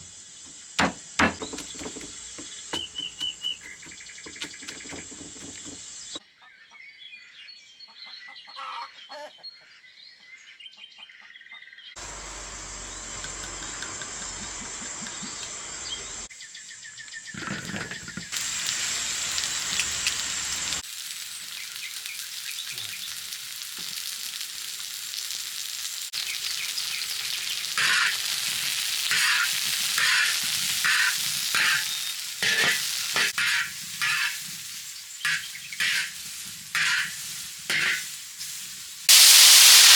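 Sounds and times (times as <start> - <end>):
food sizzling in a hot pan: 0.0 - 6.2, 12.0 - 16.3, 17.3 - 39.9
birds chirping faintly: 0.1 - 6.2, 11.6 - 23.2
utensil stirring and scraping: 1.3 - 6.2, 17.4 - 18.4.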